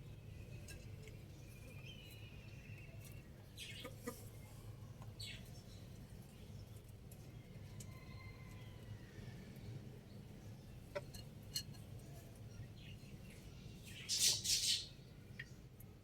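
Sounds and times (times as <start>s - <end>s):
chickens clucking: 3.6s - 4.3s.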